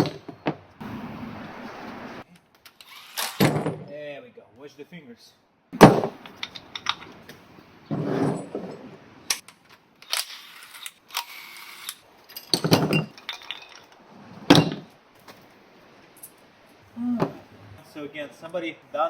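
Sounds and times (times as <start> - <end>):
metal tools clinking: 6.0 - 7.2, 8.2 - 14.9
metal scraping: 7.9 - 9.4.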